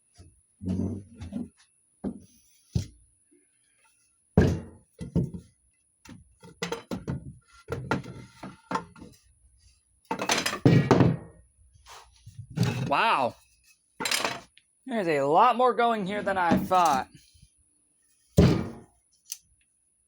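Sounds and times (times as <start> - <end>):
objects knocking on a shelf: 4.4 - 5.5, 6.1 - 9.2, 10.1 - 11.3, 18.4 - 18.9.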